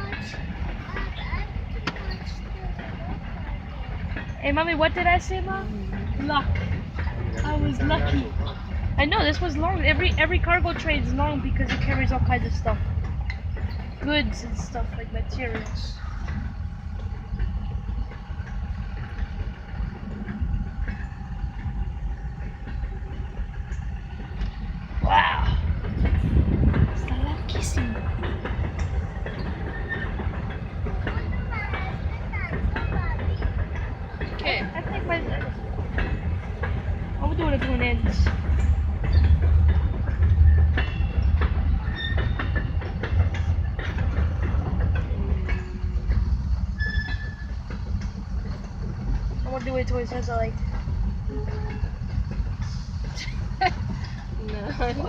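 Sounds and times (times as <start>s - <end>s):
freight train rumbling past: 0.0s - 55.0s
wheels clacking over rail joints: 0.0s - 55.0s
faint high squeals: 46.7s - 47.6s.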